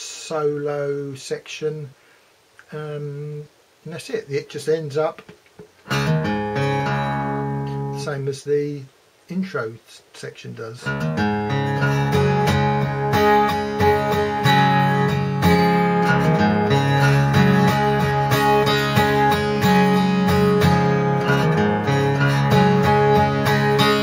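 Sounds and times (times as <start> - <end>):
guitar strumming chords: 5.2 - 8.3, 10.8 - 24.0.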